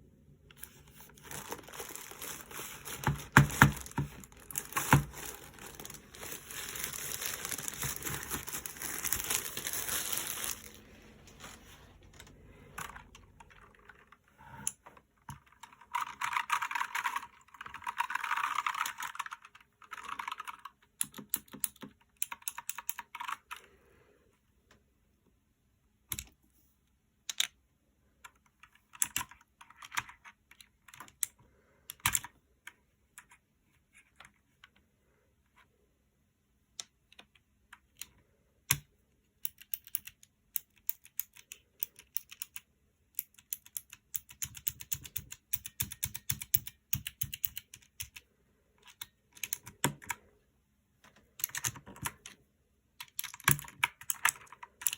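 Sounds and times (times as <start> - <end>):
packaging rustling: 0.6 - 12.3
mechanical keyboard typing: 39.5 - 48.2, 48.8 - 50.2, 51.4 - 52.4, 53.0 - 54.9.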